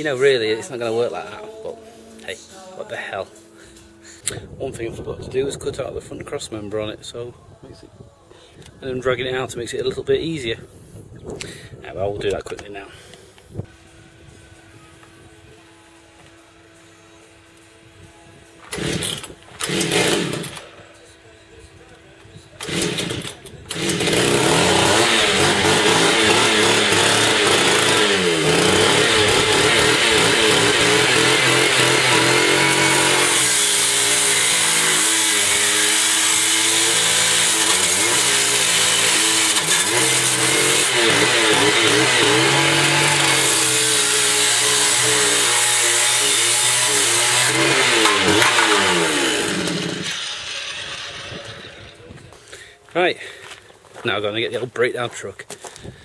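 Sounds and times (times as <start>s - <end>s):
power tool cutting steel: 18.6s - 20.9s, 22.6s - 52.1s.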